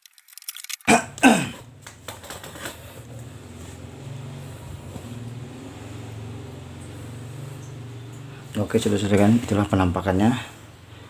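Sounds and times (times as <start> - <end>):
washing machine motor humming: 3.0 - 11.0.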